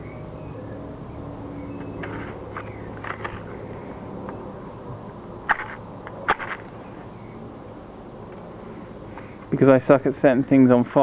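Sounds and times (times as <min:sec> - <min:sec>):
low background hiss: 0:00.0 - 0:11.0
sharp clicks and scratches: 0:02.0 - 0:03.5, 0:05.5 - 0:06.7.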